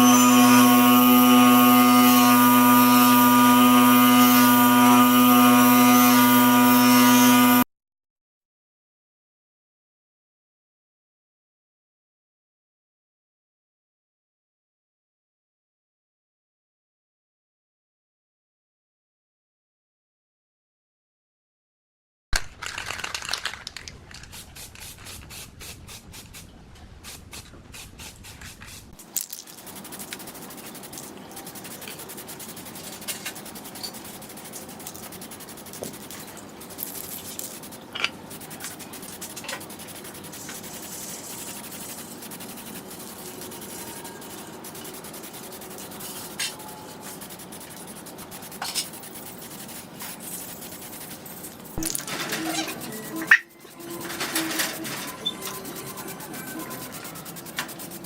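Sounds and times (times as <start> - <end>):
hand scraping on fan parts: 24.2 - 58.0.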